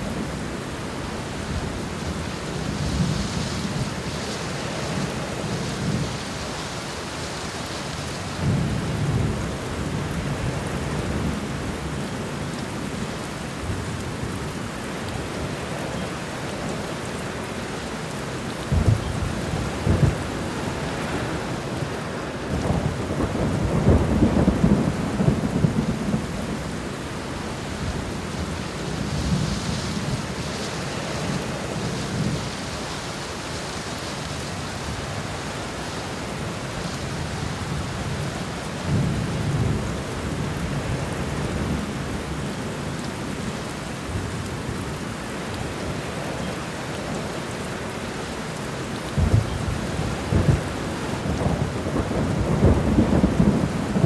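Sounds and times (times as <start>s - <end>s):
steady rain: 0.0s - 54.0s
thunder rumbling: 18.7s - 21.9s, 22.5s - 32.6s, 49.2s - 54.0s.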